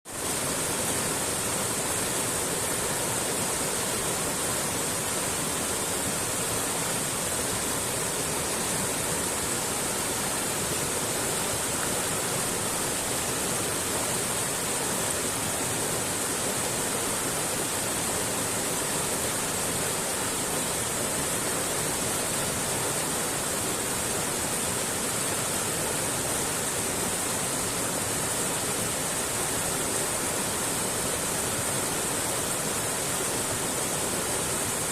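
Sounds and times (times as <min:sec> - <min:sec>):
stream rushing over rocks: 0:00.1 - 0:34.9.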